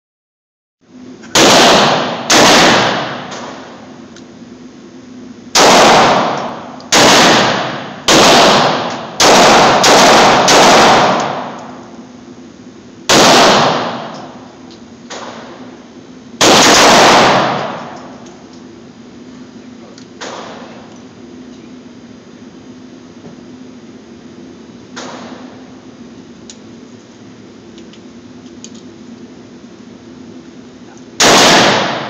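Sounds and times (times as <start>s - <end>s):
revolver shots echoing: 31.2s - 32.0s.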